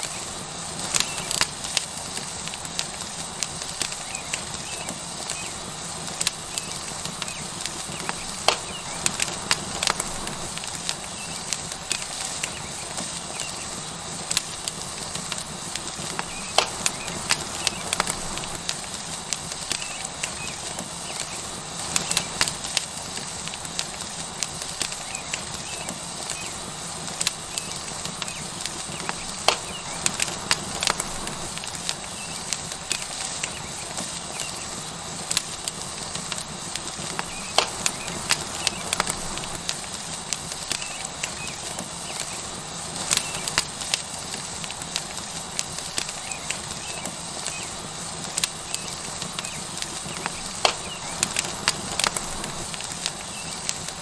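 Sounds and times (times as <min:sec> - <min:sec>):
steak sizzling on hot stone: 0:00.0 - 0:54.0
wood fire crackling: 0:00.0 - 0:54.0.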